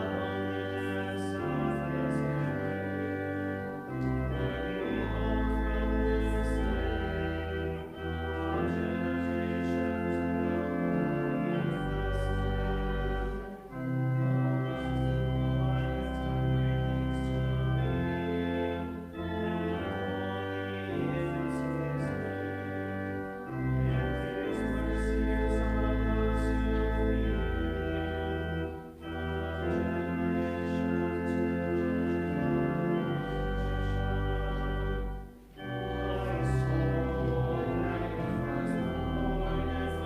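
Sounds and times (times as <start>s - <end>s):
church organ chords: 0.0s - 40.0s.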